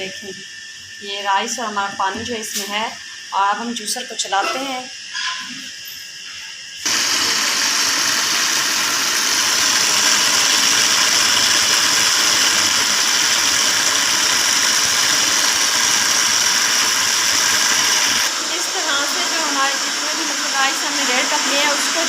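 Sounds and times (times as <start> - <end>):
electric grinder grinding rice: 6.8 - 22.0.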